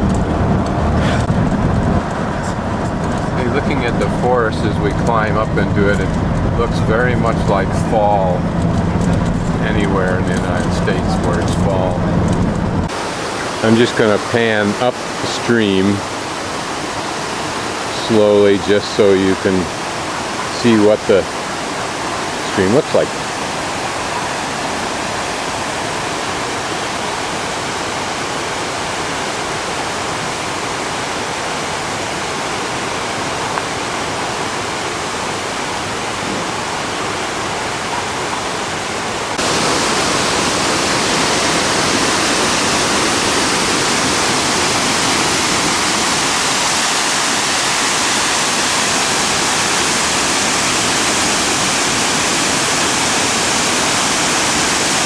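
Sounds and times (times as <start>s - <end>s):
stream rushing over rocks: 0.0s - 55.0s.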